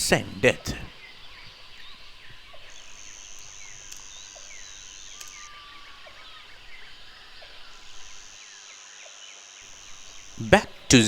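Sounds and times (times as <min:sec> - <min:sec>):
high-pitched insect drone: 0:02.7 - 0:11.0.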